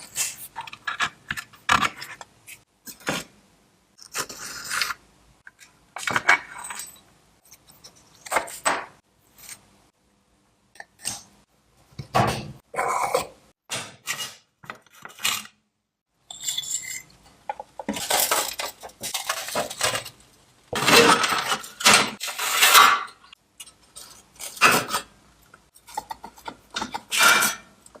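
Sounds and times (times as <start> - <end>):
metal clinking and scraping: 6.0 - 8.6, 16.2 - 17.2, 17.8 - 20.2.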